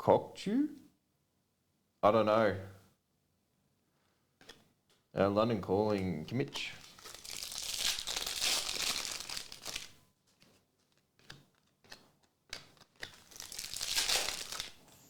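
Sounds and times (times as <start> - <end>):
cards clicking and tapping: 4.4 - 4.7, 8.6 - 14.8
foil wrapper crinkling: 6.5 - 14.8.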